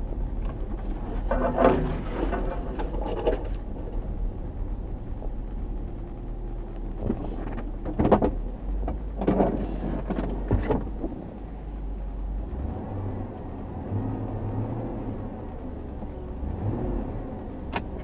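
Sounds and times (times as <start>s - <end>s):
car engine humming: 0.0s - 18.0s
short clunks: 6.9s - 11.2s.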